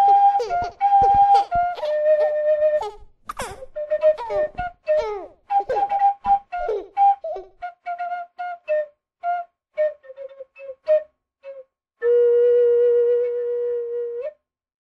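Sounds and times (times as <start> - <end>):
high-pitched giggling: 0.0 - 6.0.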